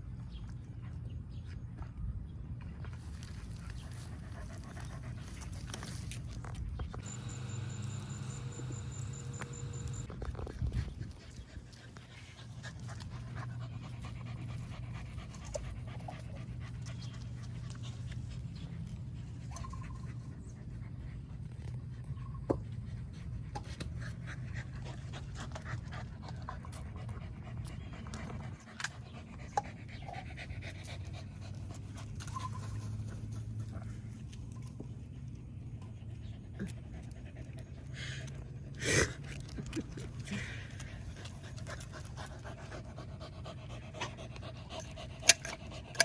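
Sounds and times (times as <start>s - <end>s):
dog panting: 7.0s - 33.4s, 36.1s - 46.0s.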